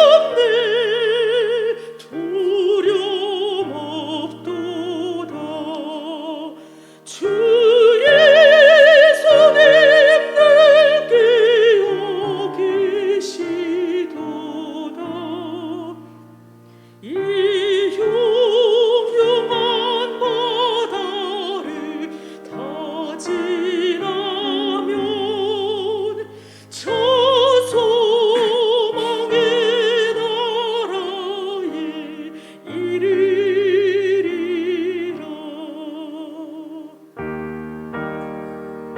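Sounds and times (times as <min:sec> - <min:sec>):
woman singing a hymn: 0:00.0 - 0:16.3, 0:17.0 - 0:37.2
piano accompaniment: 0:00.0 - 0:38.9.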